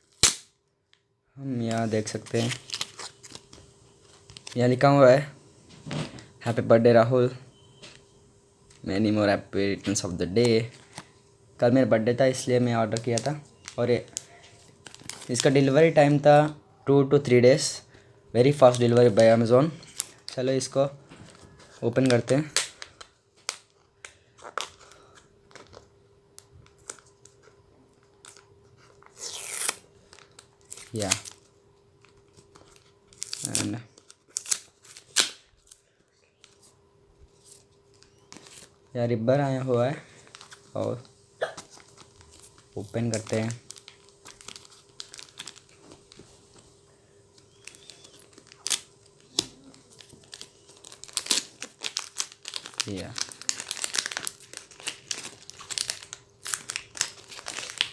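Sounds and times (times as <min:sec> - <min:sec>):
package being opened by hand: 0:01.7 - 0:04.6, 0:12.9 - 0:15.5, 0:21.2 - 0:27.4, 0:28.0 - 0:35.8, 0:37.4 - 0:38.8, 0:41.5 - 0:46.3, 0:47.4 - 0:57.9
package being handled: 0:40.1 - 0:46.7, 0:47.3 - 0:57.9.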